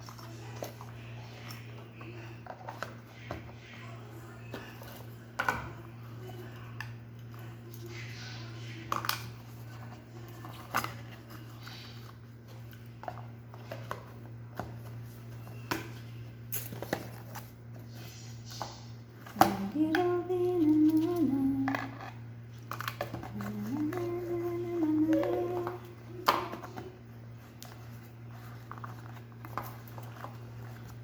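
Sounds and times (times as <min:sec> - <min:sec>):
person singing: 0:19.4 - 0:22.0, 0:23.3 - 0:26.2.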